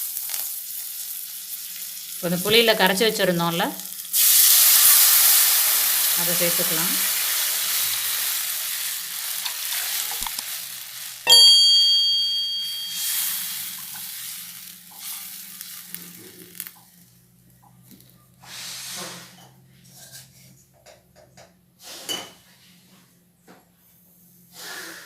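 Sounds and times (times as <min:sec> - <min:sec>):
oil sizzling in a pan: 0:00.0 - 0:17.2.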